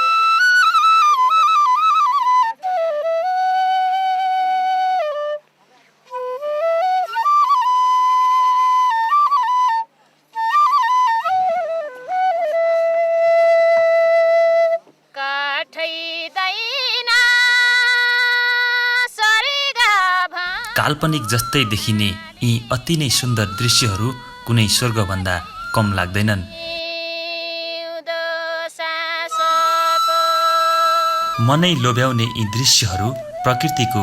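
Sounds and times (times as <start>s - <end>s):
solo flute melody: 0.0s - 15.0s, 20.5s - 27.0s, 29.1s - 34.0s.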